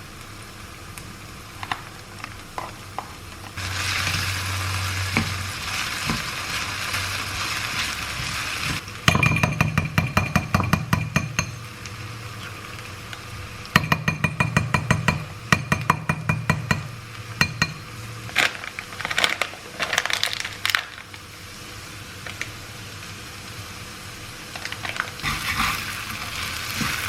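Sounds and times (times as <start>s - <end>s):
food sizzling in a frying pan: 0.0s - 14.4s, 16.9s - 27.0s
utensil tapping on cookware: 9.1s - 11.6s, 13.8s - 17.9s.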